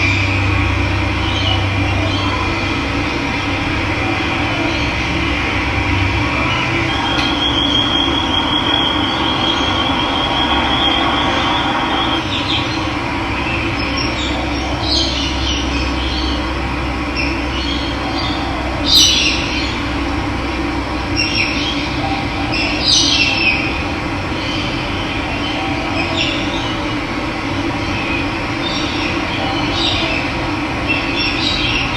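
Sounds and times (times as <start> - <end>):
birds calling: 0.0 - 20.1, 21.0 - 31.9.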